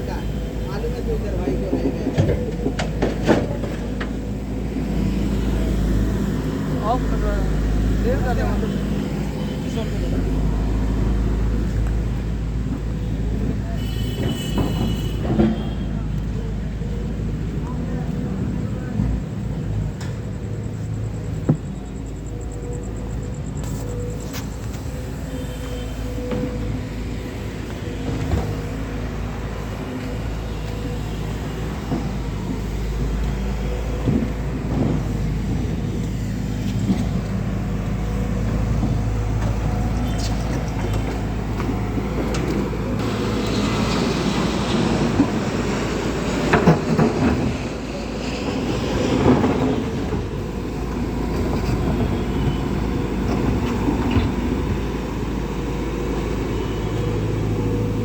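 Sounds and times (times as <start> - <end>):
diesel engine droning: 0.0 - 58.0
rattling and clunking: 0.4 - 5.8.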